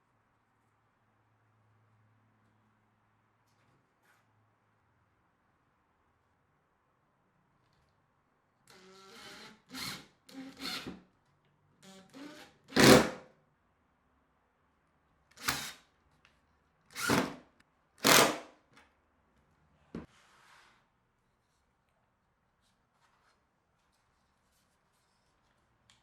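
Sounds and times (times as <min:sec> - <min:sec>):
power drill bursts: 0:08.7 - 0:10.9, 0:11.8 - 0:13.1, 0:15.4 - 0:15.8, 0:16.9 - 0:17.4, 0:18.0 - 0:18.4.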